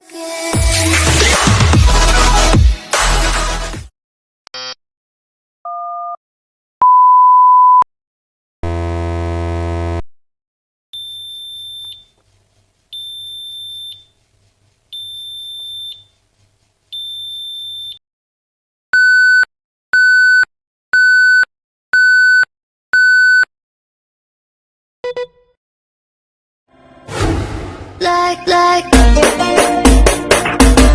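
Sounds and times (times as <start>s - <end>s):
harsh buzzer tone: 8.6s - 10.1s.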